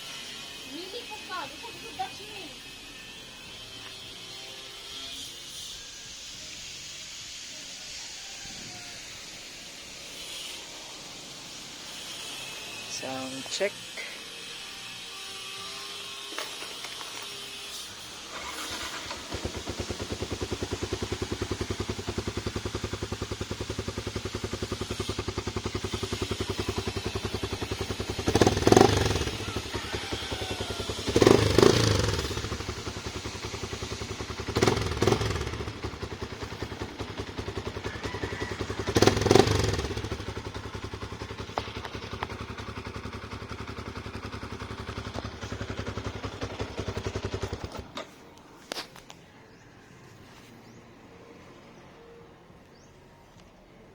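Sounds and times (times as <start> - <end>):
motorcycle engine idling: 0.3 - 4.8, 16.3 - 49.7
engine revving: 16.9 - 47.9.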